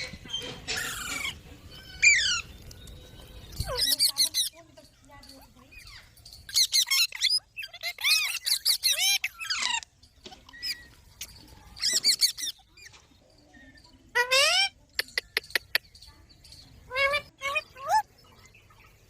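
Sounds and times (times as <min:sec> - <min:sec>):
parrot squawking: 0:00.7 - 0:02.5, 0:06.5 - 0:09.9.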